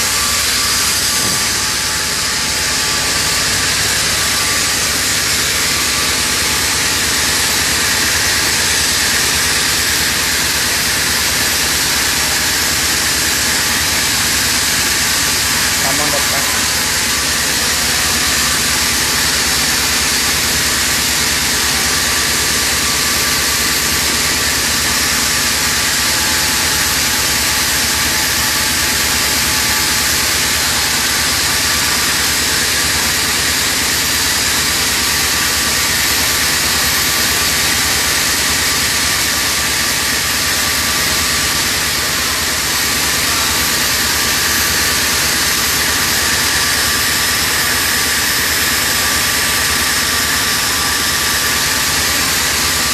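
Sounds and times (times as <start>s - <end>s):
oxygen machine humming: 0.0s - 52.9s.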